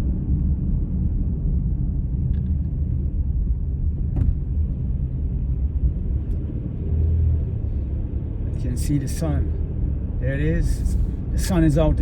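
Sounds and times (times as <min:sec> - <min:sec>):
car engine and road noise: 0:00.0 - 0:12.0.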